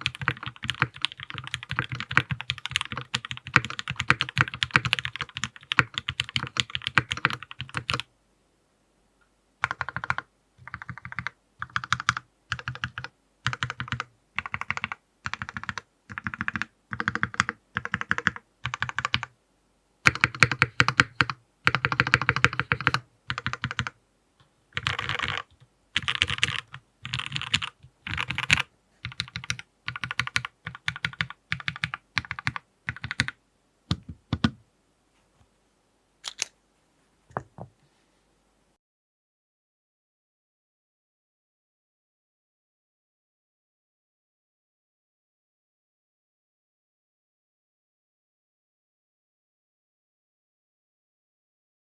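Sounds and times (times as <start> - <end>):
mechanical keyboard typing: 0.0 - 8.0, 9.6 - 19.3, 20.0 - 24.0, 24.8 - 34.6.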